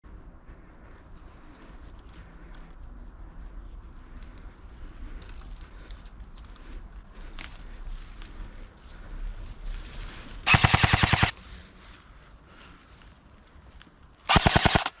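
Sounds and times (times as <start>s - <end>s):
airsoft gun full-auto bursts: 10.5s - 11.4s, 14.3s - 15.0s.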